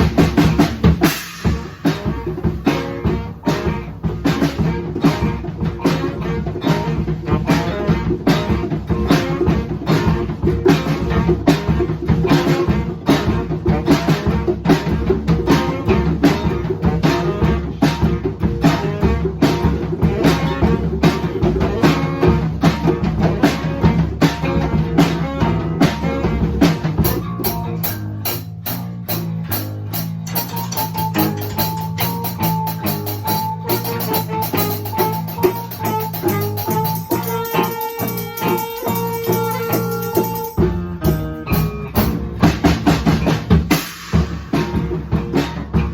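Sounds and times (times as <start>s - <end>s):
bass guitar: 0.0s - 45.9s
drum kit beat: 0.0s - 45.9s
electric guitar: 0.0s - 45.9s
held high note: 30.5s - 40.7s.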